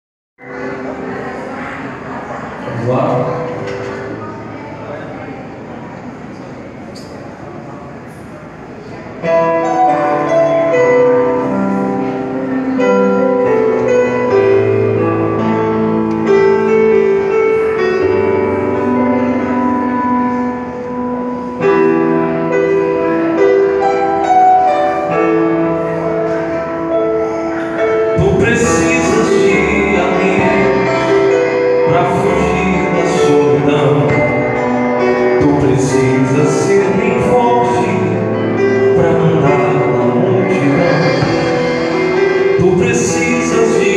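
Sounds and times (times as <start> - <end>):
keyboard chords and melody: 0.4 - 43.9
live band playing: 9.2 - 43.9.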